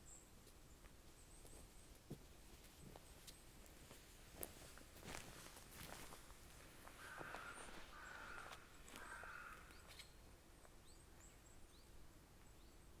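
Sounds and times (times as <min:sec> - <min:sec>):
crow cawing: 0:06.8 - 0:09.9
small birds chirping: 0:06.9 - 0:13.0.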